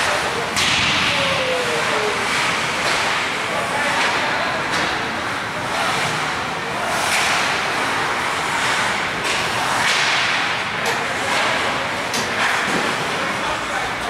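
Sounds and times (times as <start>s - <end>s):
ice skates scraping: 5.7s - 10.1s.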